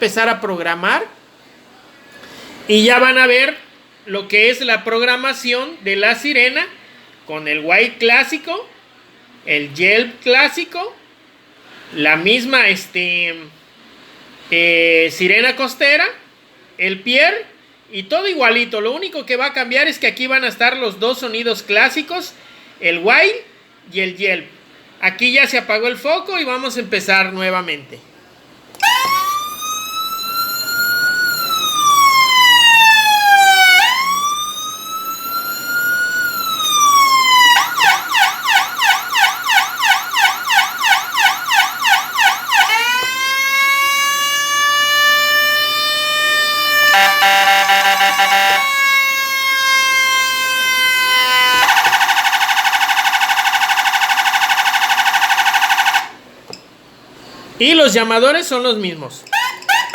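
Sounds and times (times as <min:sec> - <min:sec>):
electronic siren: 0:28.8 - 0:56.2.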